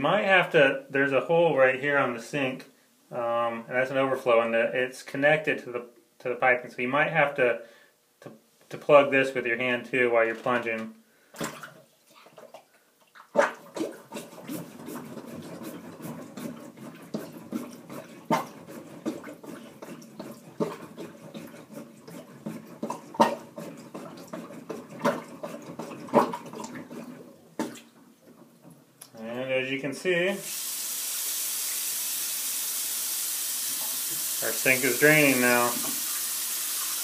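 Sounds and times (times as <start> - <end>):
sink plunger pumping: 11.4 - 28.8, 30.4 - 37.0
water sloshing and gurgling: 11.4 - 28.8
plunger sucking pops: 13.4 - 27.9, 33.6 - 37.0.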